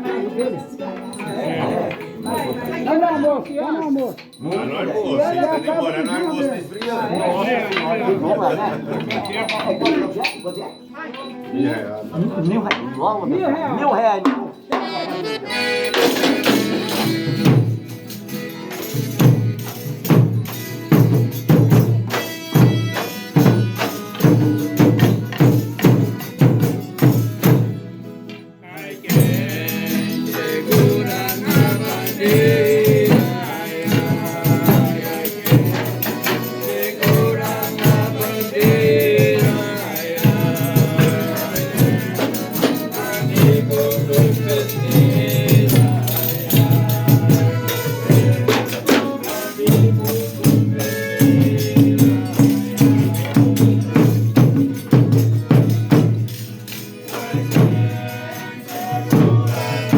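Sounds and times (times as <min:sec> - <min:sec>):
group singing: 0:00.0 - 0:03.0, 0:28.6 - 0:59.9
tambourine beaten and shaken: 0:14.5 - 0:28.0, 0:28.7 - 0:59.9.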